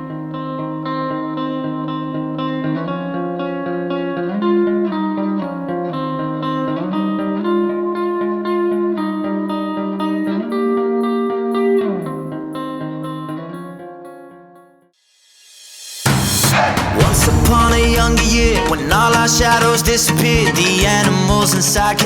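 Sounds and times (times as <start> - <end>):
plucked guitar melody: 0.0 - 14.9, 17.0 - 22.0.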